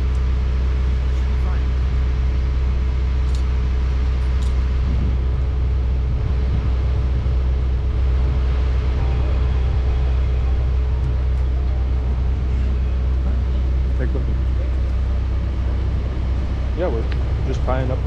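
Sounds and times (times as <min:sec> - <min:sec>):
diesel engine droning: 0:00.0 - 0:18.0.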